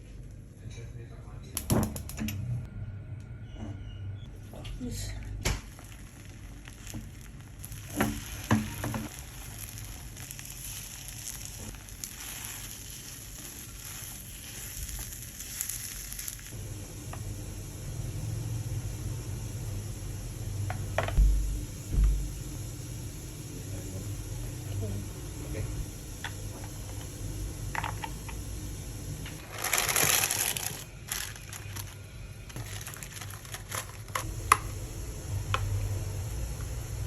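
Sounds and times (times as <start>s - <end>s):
food sizzling in oil: 5.6s - 37.0s
louder thumps: 21.1s - 22.4s.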